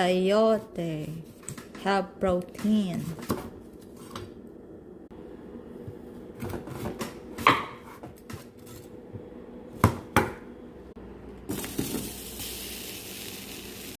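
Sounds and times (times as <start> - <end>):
steady hiss: 11.5 - 14.0.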